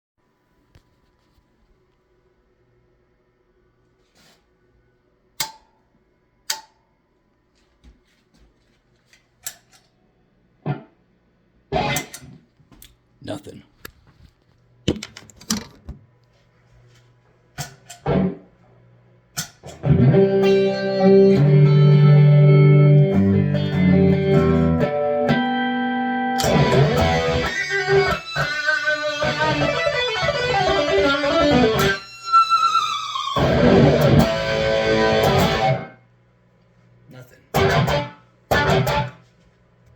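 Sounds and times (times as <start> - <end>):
electric guitar chords and notes: 11.7 - 12.4, 18.0 - 18.5, 19.4 - 36.0, 37.5 - 39.2
faint low amp hum: 33.4 - 39.9.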